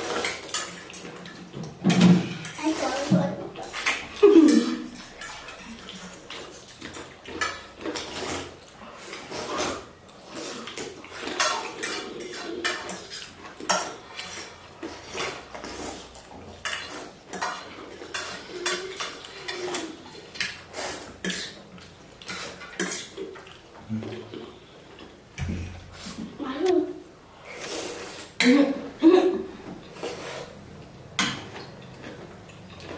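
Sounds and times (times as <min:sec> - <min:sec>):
cutlery clinking on plates: 0:10.7 - 0:14.5, 0:16.6 - 0:20.6.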